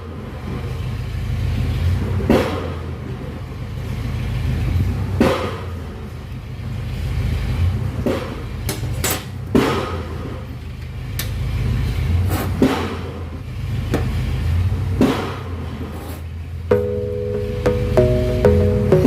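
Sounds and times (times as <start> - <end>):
low steady rumble: 13.0 - 19.0.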